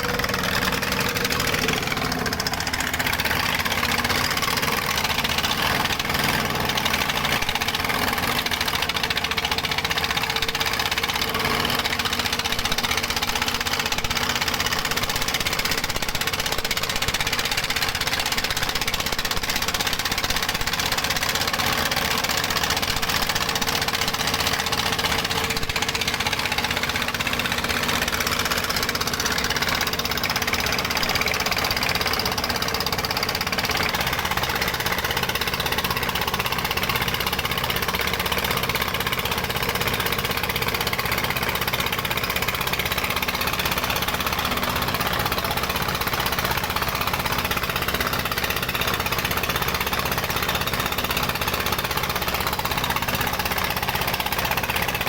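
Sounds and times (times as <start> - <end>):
diesel engine clattering: 0.0 - 55.0.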